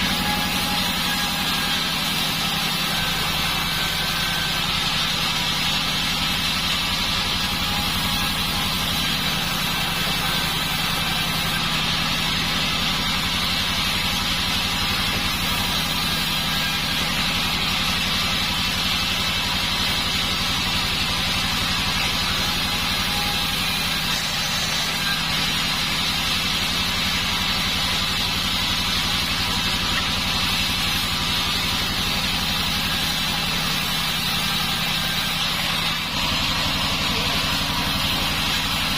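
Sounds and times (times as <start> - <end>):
band saw machine humming and hissing: 0.0 - 38.9.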